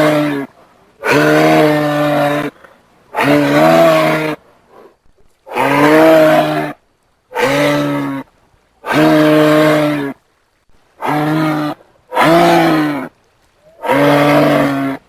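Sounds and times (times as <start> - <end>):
giraffe moo-like call: 3.2 - 4.4, 11.0 - 15.0.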